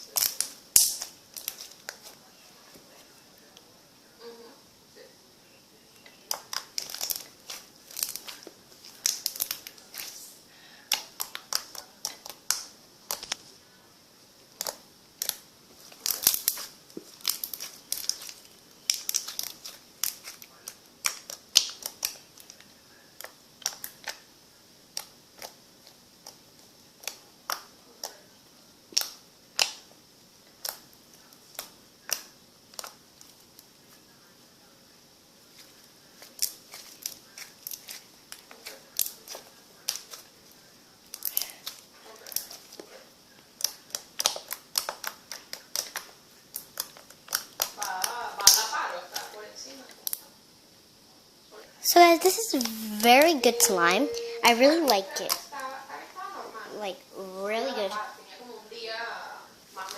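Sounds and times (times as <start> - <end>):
slime squelching wet clicks: 10.9 - 13.3, 16.0 - 22.6, 23.2 - 24.2, 28.9 - 29.9, 43.6 - 48.6.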